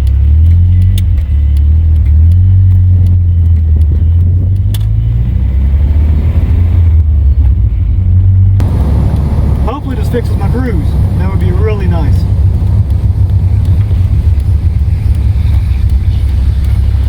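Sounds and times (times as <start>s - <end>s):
car engine and road rumble: 0.0s - 17.0s
faint clicks: 8.6s - 17.0s.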